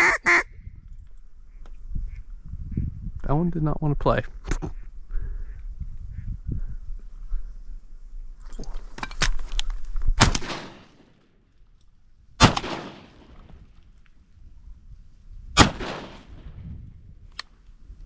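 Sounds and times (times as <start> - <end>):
shotgun shots echoing: 10.2 - 11.2, 12.4 - 13.4, 15.6 - 16.5.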